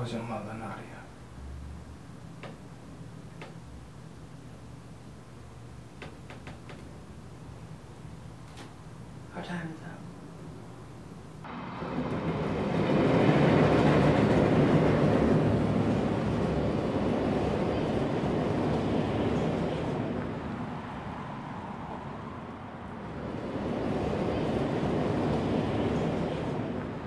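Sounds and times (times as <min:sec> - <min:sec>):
steady rumbling noise: 0:00.0 - 0:27.0.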